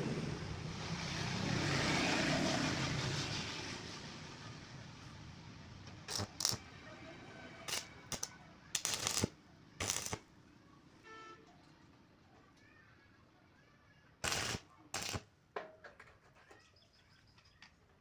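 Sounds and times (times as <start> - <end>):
welding arc crackle: 6.0 - 6.7, 7.7 - 10.2, 14.2 - 15.2.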